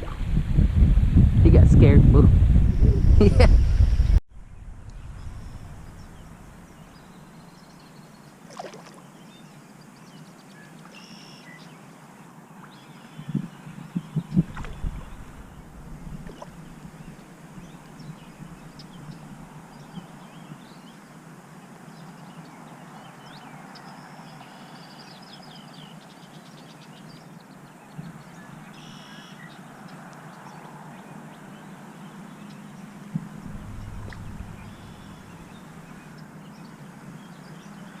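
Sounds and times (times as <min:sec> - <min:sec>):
birds chirping: 0:02.9 - 0:11.9, 0:12.6 - 0:21.1, 0:30.3 - 0:38.0
steady background hiss: 0:03.2 - 0:38.0.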